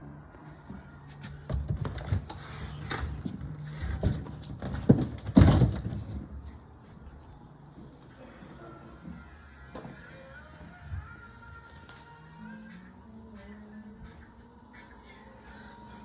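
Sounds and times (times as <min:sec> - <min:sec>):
handling knocks and rustling: 0:01.1 - 0:06.6.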